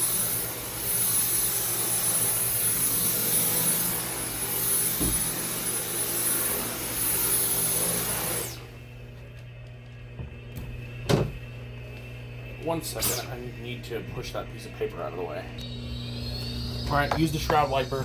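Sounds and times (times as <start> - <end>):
motor winding down: 0.0 - 9.0, 12.0 - 18.0
vacuum cleaner running: 0.0 - 18.0
thump: 5.0 - 5.3.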